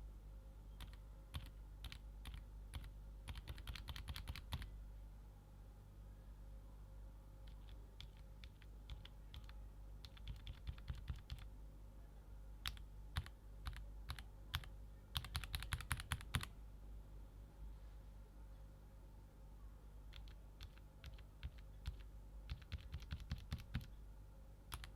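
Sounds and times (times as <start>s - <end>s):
mechanical keyboard typing: 0.8s - 4.7s, 7.4s - 11.5s, 12.6s - 16.5s, 20.1s - 23.9s.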